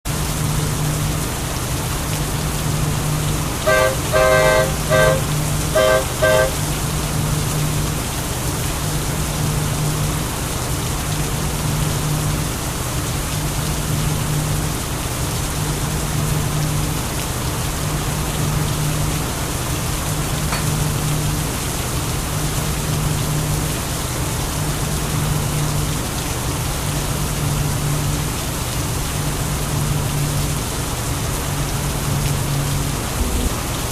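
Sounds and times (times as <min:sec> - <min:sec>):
heavy rain: 0:00.1 - 0:33.9
train horn short toots: 0:03.6 - 0:06.8.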